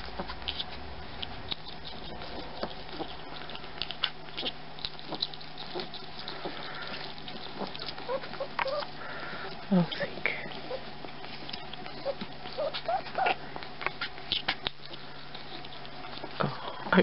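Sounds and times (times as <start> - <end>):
pet snuffly breathing: 5.1 - 17.0.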